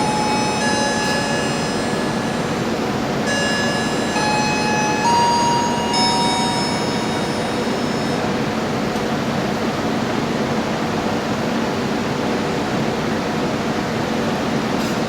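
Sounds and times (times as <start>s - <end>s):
high steady ringing tones: 0.0s - 8.9s
train wheels rumbling on rail: 0.0s - 15.0s.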